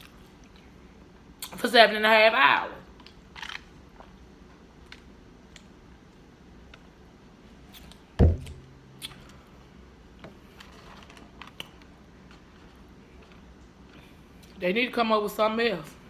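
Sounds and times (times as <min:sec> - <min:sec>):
loud dull thump: 0:08.2 - 0:08.7.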